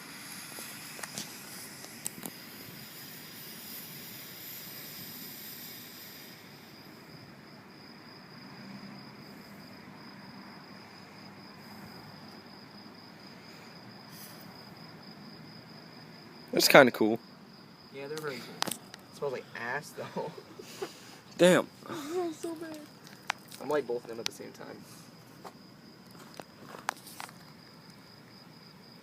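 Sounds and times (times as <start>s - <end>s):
smoke bomb fizzing: 0.0s - 7.0s
crickets trilling: 0.0s - 29.0s.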